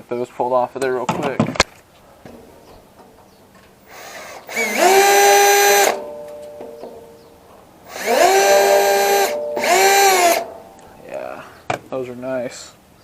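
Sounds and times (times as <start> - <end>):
electric drill motor whine: 3.9 - 6.8, 7.9 - 10.5.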